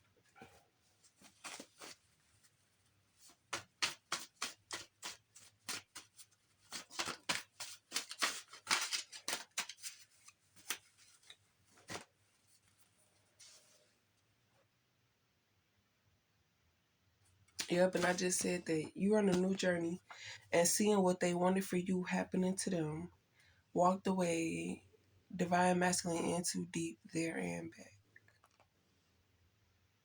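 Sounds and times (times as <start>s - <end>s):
deck of cards being shuffled: 3.5s - 12.1s.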